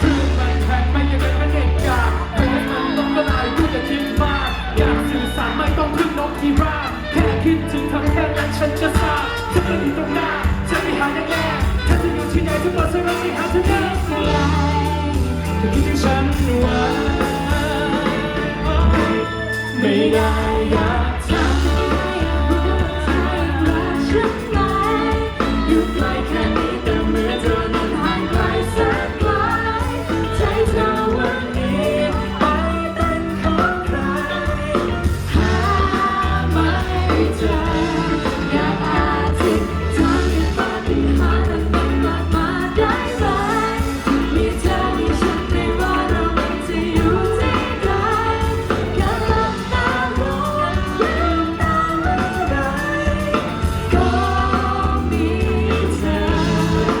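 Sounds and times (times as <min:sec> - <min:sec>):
person singing: 0:00.0 - 0:57.0
pop band playing: 0:00.0 - 0:57.0.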